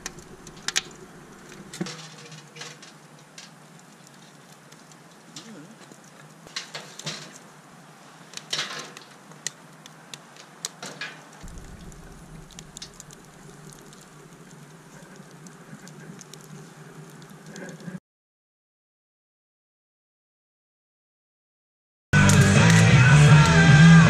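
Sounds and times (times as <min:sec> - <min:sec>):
wood fire crackling and popping: 0:00.0 - 0:18.0, 0:22.2 - 0:24.0
low rumble: 0:11.4 - 0:15.2.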